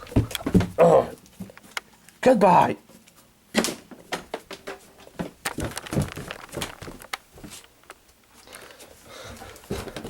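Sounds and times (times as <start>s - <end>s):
footsteps: 0.0s - 0.8s, 4.1s - 10.0s.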